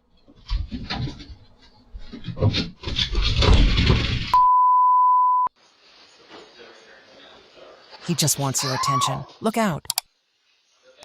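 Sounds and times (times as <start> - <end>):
high censor bleep: 4.4 - 5.5.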